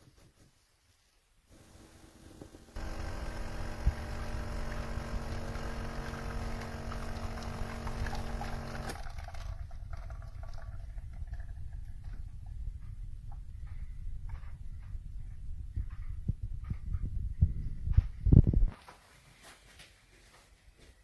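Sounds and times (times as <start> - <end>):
espresso machine hum: 1.5 - 9.2.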